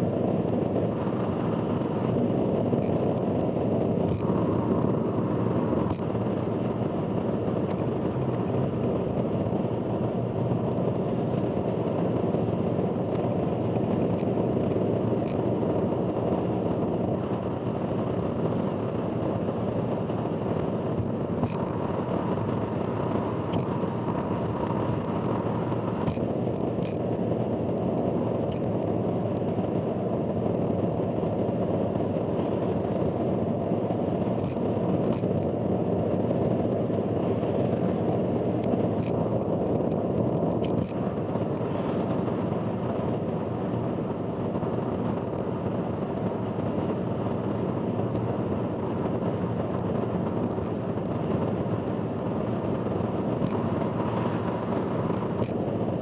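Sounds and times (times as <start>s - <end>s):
car road and engine noise: 0.0s - 56.0s
light ticks: 22.4s - 27.1s.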